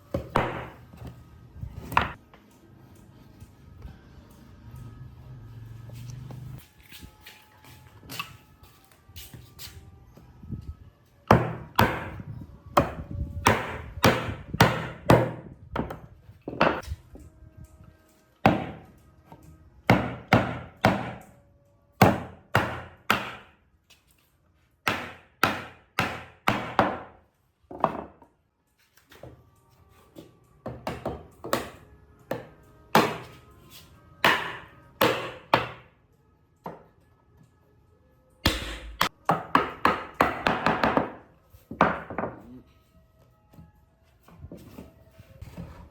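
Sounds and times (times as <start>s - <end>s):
hammer striking wood: 0.1s - 0.8s, 1.9s - 2.2s, 11.3s - 12.2s, 12.8s - 16.8s, 18.4s - 18.9s, 19.9s - 21.3s, 22.0s - 23.5s, 24.8s - 27.2s, 30.7s - 33.4s, 34.2s - 35.8s, 38.4s - 42.4s.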